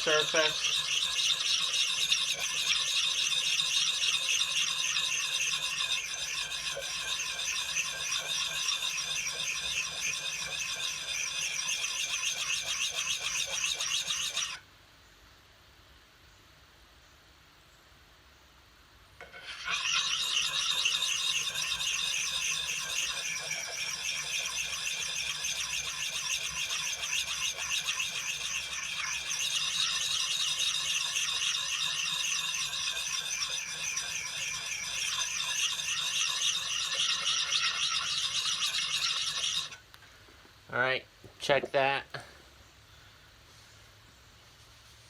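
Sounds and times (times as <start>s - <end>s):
sharpening stone rasping on steel: 0.0s - 14.6s, 19.2s - 39.8s.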